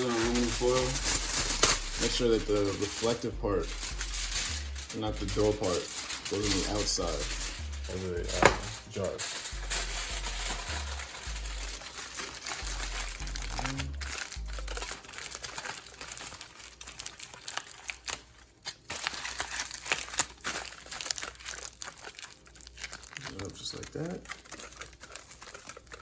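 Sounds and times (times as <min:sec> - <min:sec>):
aluminum foil crinkling: 0:00.0 - 0:26.0.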